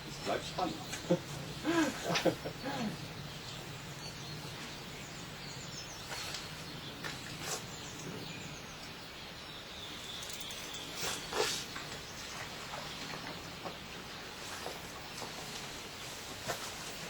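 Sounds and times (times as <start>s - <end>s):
faint bird chirps: 0.2s - 13.8s.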